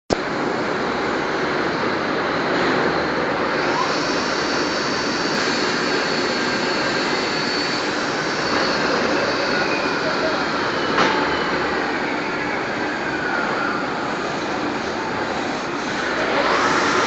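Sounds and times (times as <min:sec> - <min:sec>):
saw machine running: 0:03.4 - 0:17.0.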